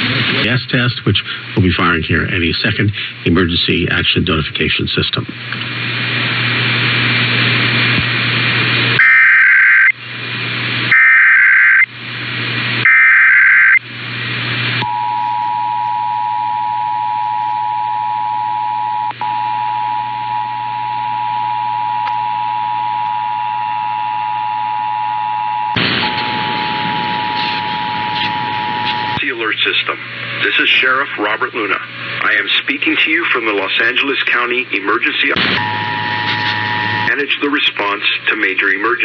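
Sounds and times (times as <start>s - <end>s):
digital data burst warble: 25.8s - 29.2s
two-tone alert signal: 26.0s - 29.2s, 35.6s - 37.1s.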